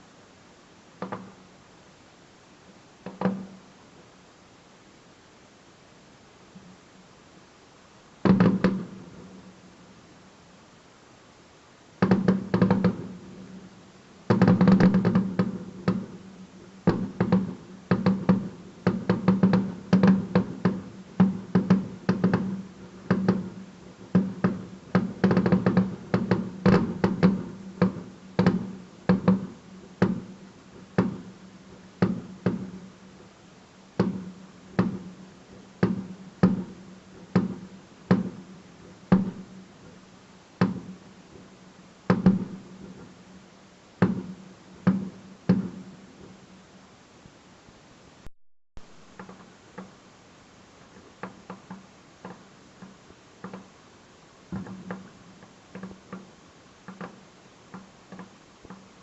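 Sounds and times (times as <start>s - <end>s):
fireworks exploding: 8.2s - 9.5s, 12.0s - 13.6s, 14.3s - 28.6s.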